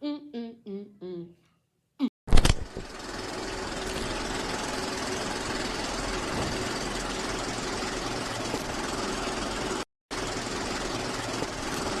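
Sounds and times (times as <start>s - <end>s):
steady machine noise: 2.6s - 12.0s.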